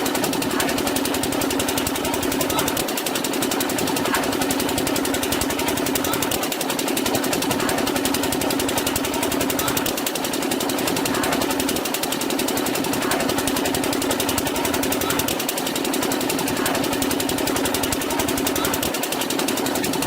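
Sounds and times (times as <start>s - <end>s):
engine running with fast chatter: 0.0s - 20.0s.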